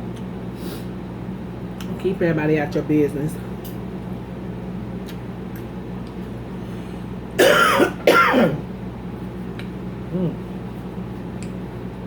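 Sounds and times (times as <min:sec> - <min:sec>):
low room hum: 0:00.0 - 0:12.0
woman coughing: 0:07.4 - 0:08.6.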